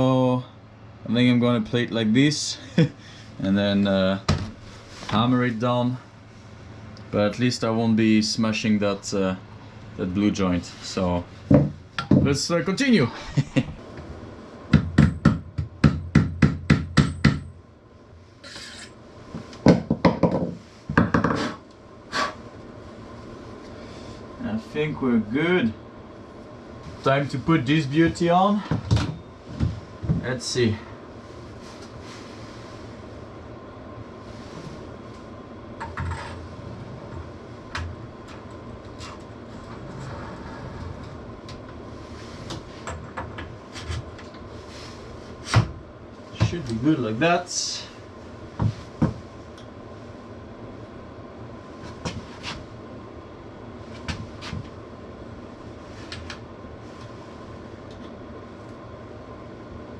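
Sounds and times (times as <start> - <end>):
steady low hum: 0.0 - 59.9
knocks and clicks of bike parts: 11.5 - 12.3, 14.7 - 17.5, 19.6 - 21.4
hammer on metal pipe: 14.7 - 17.5
metal scrape: 18.4 - 19.0.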